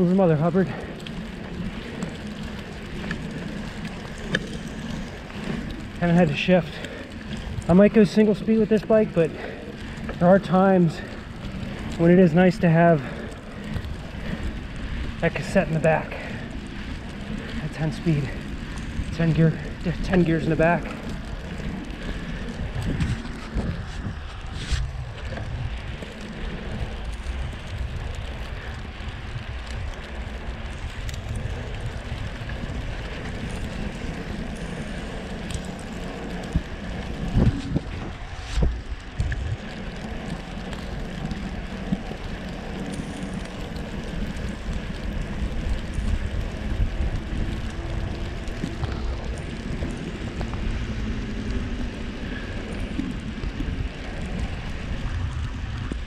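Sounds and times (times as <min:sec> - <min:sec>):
bike tyres through snow: 0:00.0 - 0:56.0
wind on microphone: 0:16.2 - 0:56.0.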